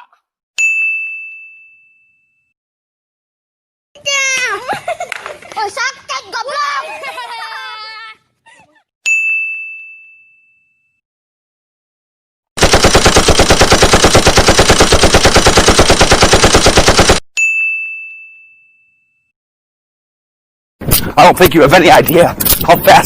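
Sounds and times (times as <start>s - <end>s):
sharp ringing ding: 0.6s - 2.5s, 9.1s - 11.0s, 17.4s - 19.3s
rapid machine-gun fire: 12.6s - 17.2s.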